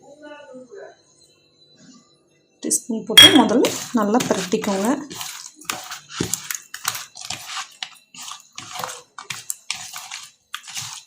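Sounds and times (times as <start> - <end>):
hands squishing wet fish: 3.3 - 11.0.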